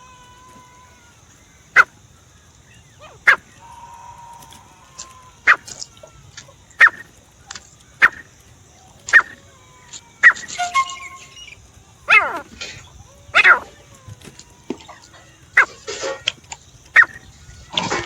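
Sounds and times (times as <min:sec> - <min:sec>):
francolin calling: 0:00.0 - 0:18.0
faint thin whistle: 0:10.2 - 0:11.6.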